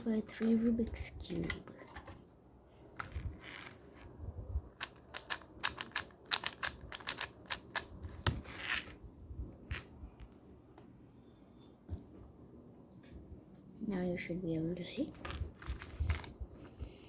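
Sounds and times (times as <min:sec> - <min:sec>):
puzzle cube plastic clicks: 0:04.7 - 0:08.4.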